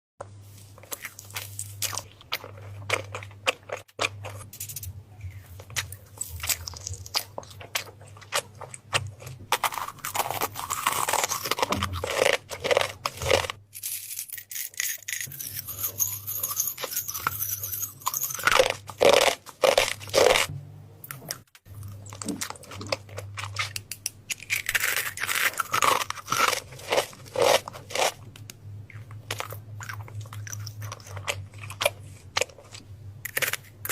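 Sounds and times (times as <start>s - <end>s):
low steady hum: 0.2s - 33.9s
close crunching and crackling: 0.7s - 20.5s, 21.1s - 33.9s.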